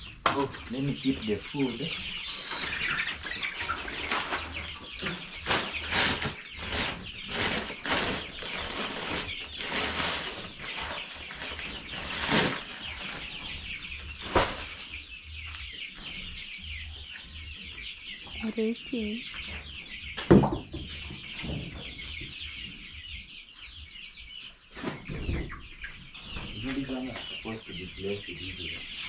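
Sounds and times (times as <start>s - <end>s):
chicks peeping: 0.0s - 29.0s
rustling and handling noises: 3.6s - 13.3s.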